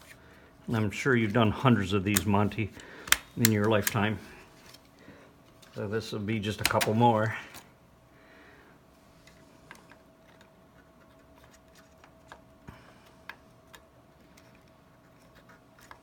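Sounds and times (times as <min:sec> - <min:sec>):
plastic latches clicking: 0:02.1 - 0:04.1, 0:06.6 - 0:07.0.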